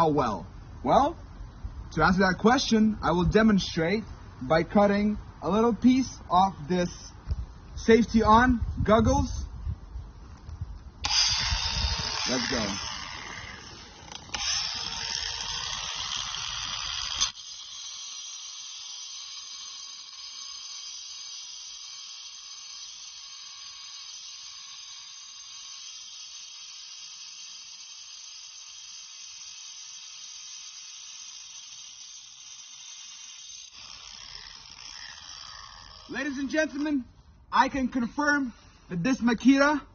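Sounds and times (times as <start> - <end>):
angle grinder cutting: 11.0 - 37.0.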